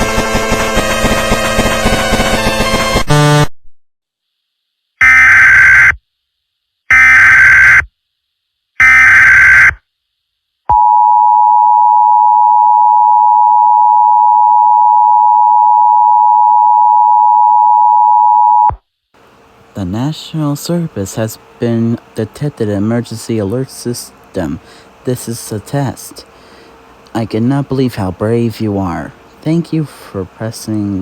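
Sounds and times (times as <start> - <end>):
screechy data-tone bursts: 5.0 - 6.0, 6.9 - 7.9, 8.8 - 9.8.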